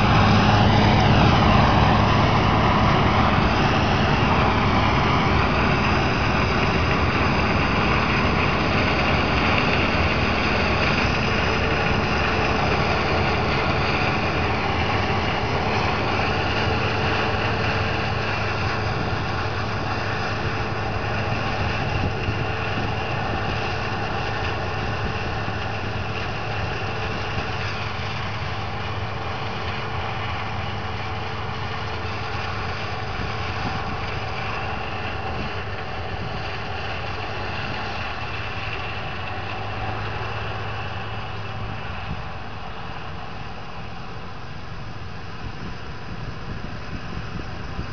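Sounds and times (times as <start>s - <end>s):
diesel machinery running: 0.0s - 47.9s.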